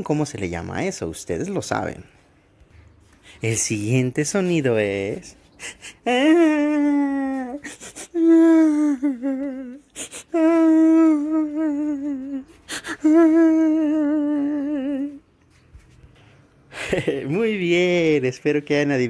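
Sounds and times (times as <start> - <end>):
person holding long wavering tones: 10.4 - 15.2.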